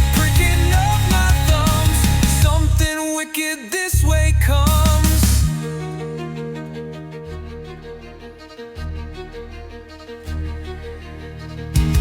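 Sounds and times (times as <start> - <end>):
instrumental rock music: 0.0 - 2.9, 4.6 - 8.0, 11.6 - 12.0.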